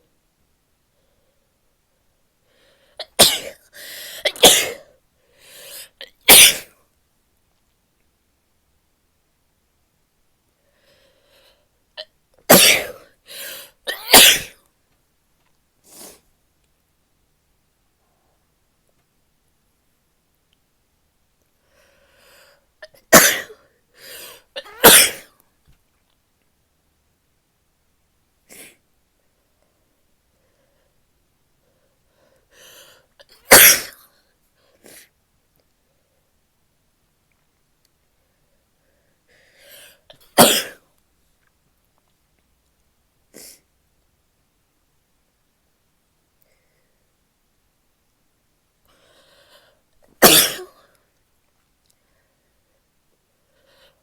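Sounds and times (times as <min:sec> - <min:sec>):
woman sneezing: 0:04.2 - 0:04.9, 0:06.3 - 0:06.7, 0:12.5 - 0:13.1, 0:13.9 - 0:14.6, 0:23.2 - 0:23.6, 0:24.6 - 0:25.3, 0:33.4 - 0:34.0, 0:50.2 - 0:50.8.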